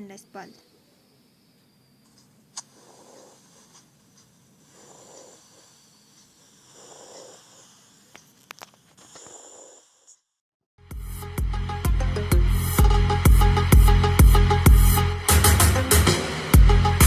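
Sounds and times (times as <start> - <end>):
breath sounds through stethoscope: 2.5 - 10.3
loud electronic music: 11.1 - 17.0.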